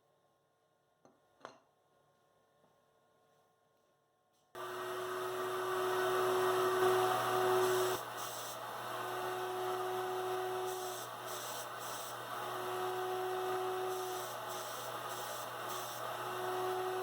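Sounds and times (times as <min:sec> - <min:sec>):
mid-pitched motor tone: 0:04.6 - 0:15.4
cnc router hum and hiss: 0:04.6 - 0:17.0.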